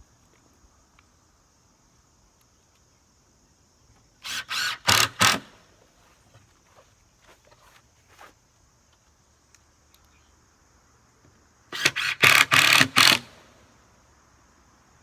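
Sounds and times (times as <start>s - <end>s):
power tool bursts: 4.2s - 5.6s, 11.7s - 13.5s.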